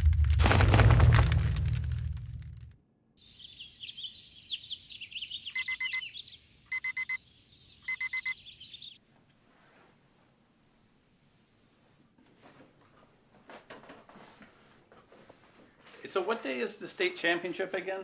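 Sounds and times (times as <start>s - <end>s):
birds chirping: 3.2s - 9.0s
alarm clock beeping: 5.6s - 6.0s, 6.7s - 7.2s, 7.9s - 8.4s.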